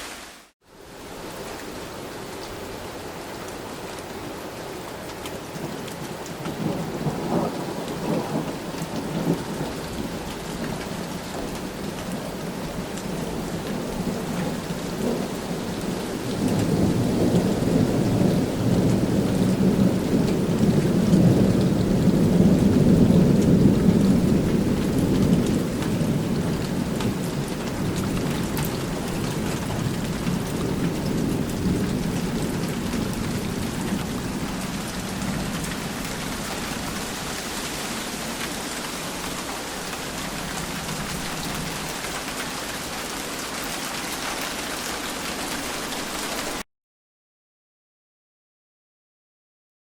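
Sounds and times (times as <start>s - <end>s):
steady rain: 0.0s - 46.6s
rolling thunder: 6.4s - 11.5s, 12.2s - 37.3s.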